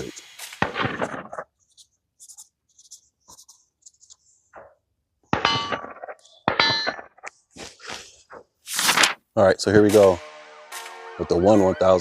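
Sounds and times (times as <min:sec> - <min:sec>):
metallic clangs ringing: 0:05.4 - 0:07.1.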